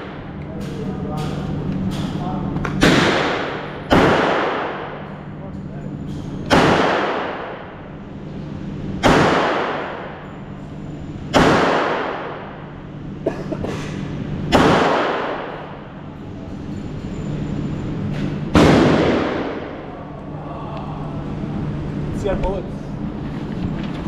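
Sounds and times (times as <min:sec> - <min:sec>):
gunshots echoing in a hall: 0:00.0 - 0:05.4, 0:06.4 - 0:08.0, 0:09.0 - 0:10.3, 0:11.3 - 0:12.9, 0:14.4 - 0:16.0, 0:18.2 - 0:20.0
steady low hum: 0:00.0 - 0:24.0.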